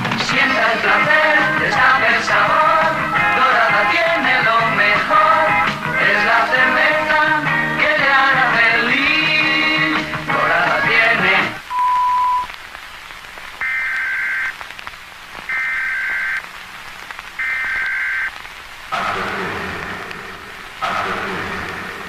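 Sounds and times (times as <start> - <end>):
short steady beep: 11.7 - 12.5
hissing noise: 12.5 - 22.0
screeching digital data tones: 13.6 - 14.5, 17.4 - 18.3.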